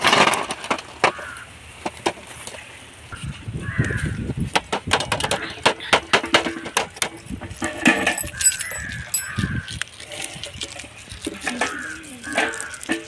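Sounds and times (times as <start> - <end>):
clinks and knocks of hard objects: 4.5 - 13.0.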